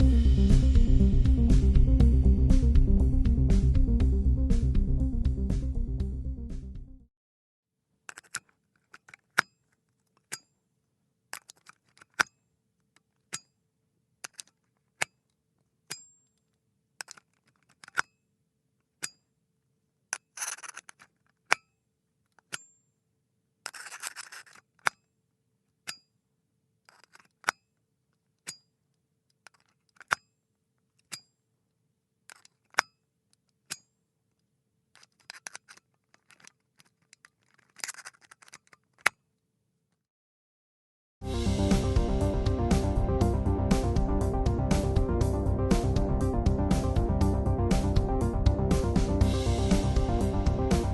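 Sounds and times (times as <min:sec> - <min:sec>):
metal plug scraping in socket: 0:08.1 - 0:10.5, 0:11.3 - 0:12.3, 0:14.2 - 0:15.2, 0:17.0 - 0:18.1, 0:20.1 - 0:21.6, 0:23.6 - 0:25.0, 0:26.9 - 0:27.6, 0:29.5 - 0:30.2, 0:32.3 - 0:32.9, 0:35.0 - 0:39.2.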